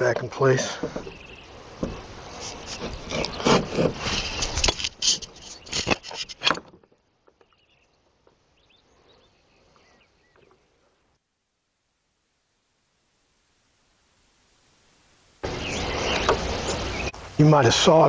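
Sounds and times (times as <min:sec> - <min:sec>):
small chirps: 0:02.3 - 0:06.4
clamps knocking and scraping on wood: 0:02.6 - 0:06.9.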